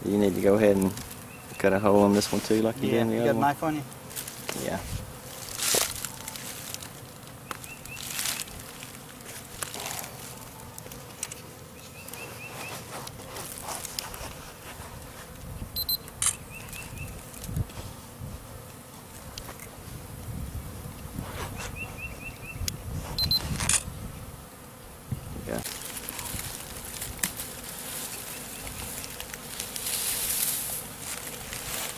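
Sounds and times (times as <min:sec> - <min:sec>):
honeybees buzzing: 0:00.0 - 0:31.9
bush rustling and knocking: 0:00.7 - 0:15.5, 0:25.6 - 0:31.9.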